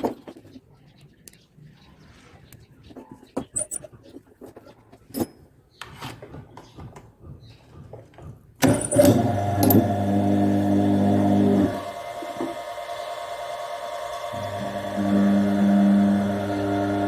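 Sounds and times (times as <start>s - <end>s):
electric motor humming: 8.6s - 17.0s.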